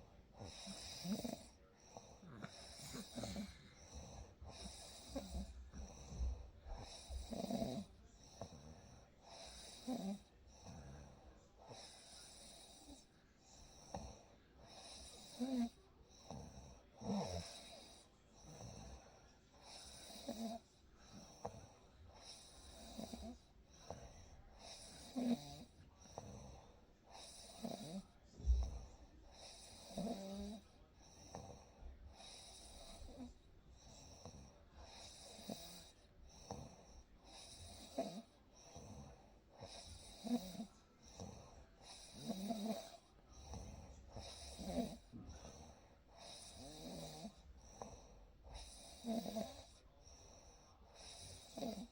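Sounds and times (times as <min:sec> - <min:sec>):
person snoring: 0:00.4 - 0:11.0
low thump: 0:28.4 - 0:28.9.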